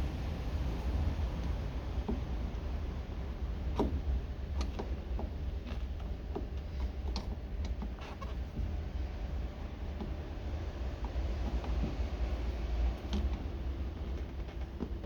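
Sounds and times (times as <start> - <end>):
steady low rumble: 0.0 - 4.5.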